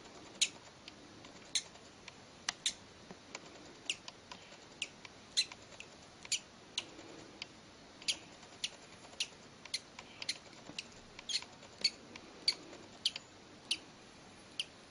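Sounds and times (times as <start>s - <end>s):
baby bird peeping: 2.5s - 2.8s, 3.8s - 6.9s, 8.0s - 14.9s.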